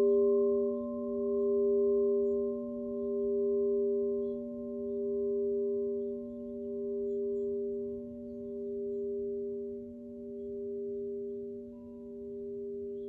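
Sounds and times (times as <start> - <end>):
crystal singing bowls humming: 0.0 - 13.0.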